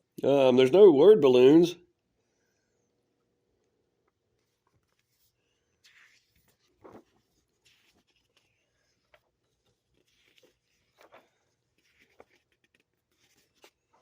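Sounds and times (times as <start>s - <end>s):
comic book pages rustling: 4.3s - 14.0s.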